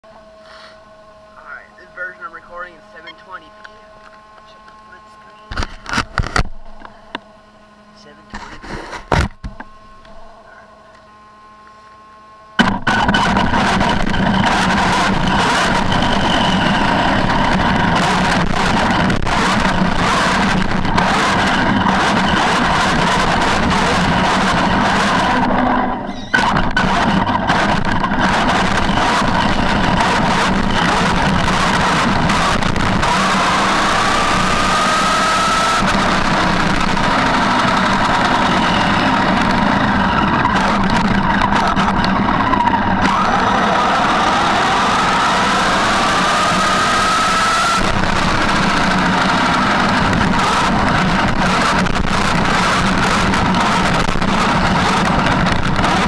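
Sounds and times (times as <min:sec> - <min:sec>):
electric motor whine: 0:00.1 - 0:56.0.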